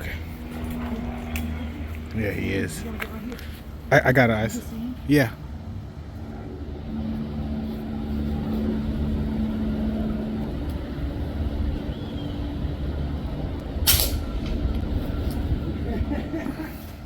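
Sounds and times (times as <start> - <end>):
low engine rumble: 0.0 - 17.0
held hum: 4.6 - 17.0.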